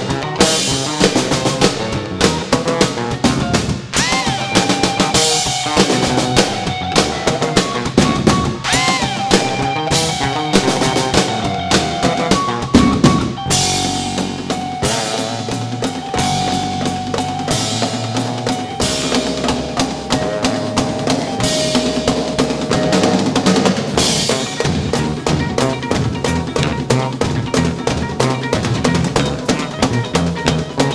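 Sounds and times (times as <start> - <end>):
drum kit beating: 0.0 - 30.9
live band playing instrumental: 0.0 - 30.9.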